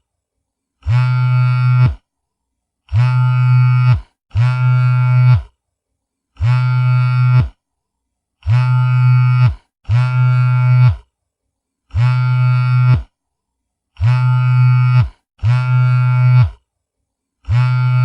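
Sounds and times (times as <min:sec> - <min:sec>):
mobile phone vibrating: 0:00.8 - 0:02.1, 0:02.8 - 0:05.6, 0:06.4 - 0:07.6, 0:08.4 - 0:11.2, 0:11.9 - 0:13.2, 0:14.0 - 0:16.7, 0:17.4 - 0:18.0.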